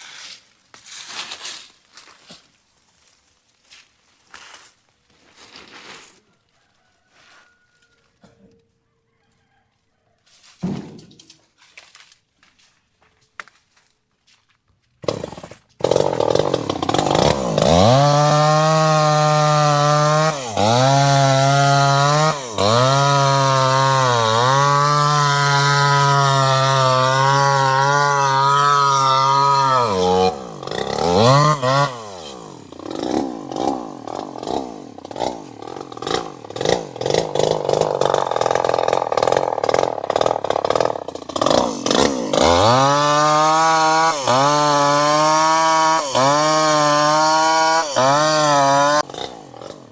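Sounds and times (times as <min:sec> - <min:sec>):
chainsaw engine revving: 0:15.0 - 0:49.9.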